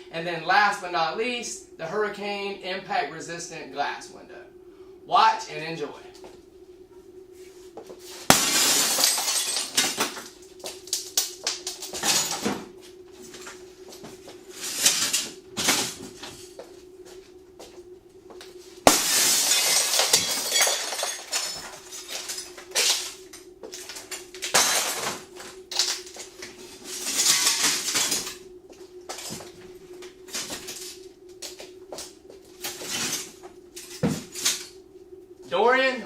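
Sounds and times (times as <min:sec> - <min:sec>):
window glass shattering: 0:08.3 - 0:10.2, 0:18.9 - 0:23.0.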